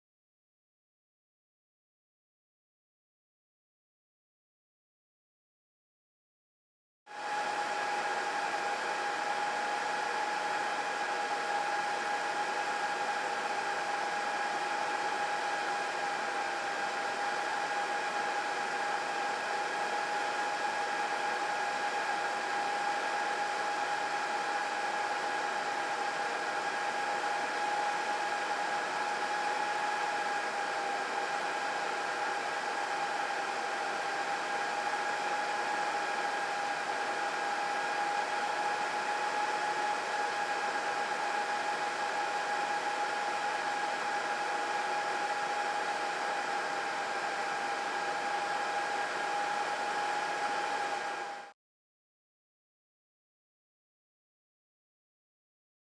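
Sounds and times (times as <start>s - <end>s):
cooling fans rushing hiss: 47.1s - 51.4s.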